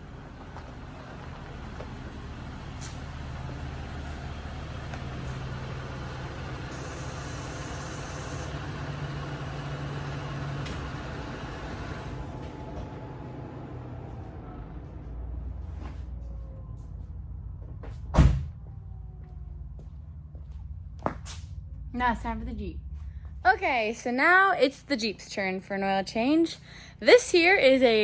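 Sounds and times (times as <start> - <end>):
vehicle engine humming: 0.0 - 28.0.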